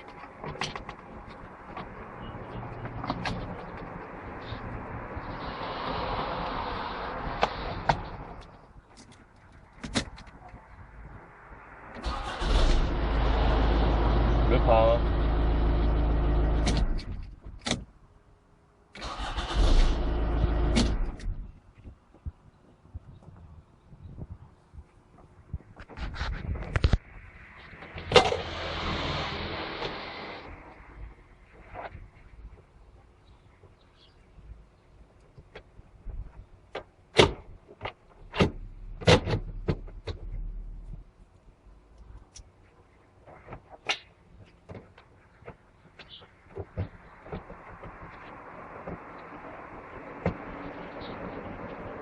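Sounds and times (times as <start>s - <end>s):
diesel engine cranking and running: 12.0s - 17.1s, 19.0s - 21.2s.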